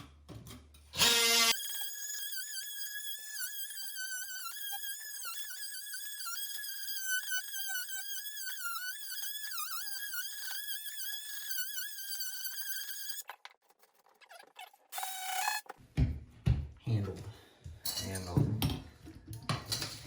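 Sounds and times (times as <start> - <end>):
oscillating tool whining: 1.0 - 13.2.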